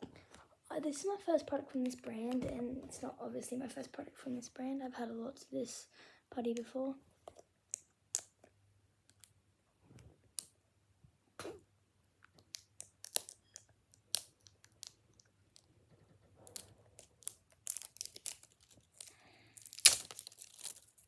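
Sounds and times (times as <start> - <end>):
plastic wrap crackling: 12.4 - 15.7, 16.4 - 21.0.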